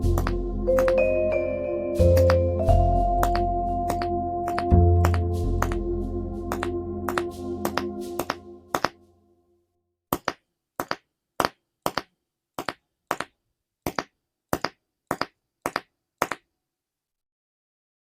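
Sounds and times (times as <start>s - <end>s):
sharp doubled clicks: 3.2s - 5.8s.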